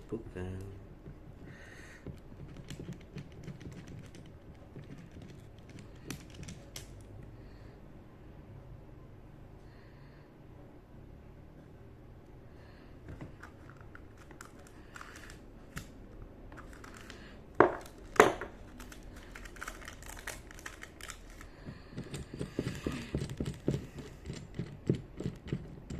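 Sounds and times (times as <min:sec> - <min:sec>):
plastic packaging crinkling: 0:16.6 - 0:21.5.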